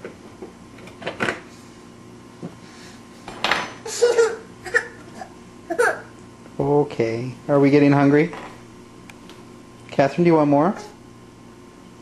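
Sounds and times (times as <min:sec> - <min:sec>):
baby babbling: 0:04.0 - 0:06.1.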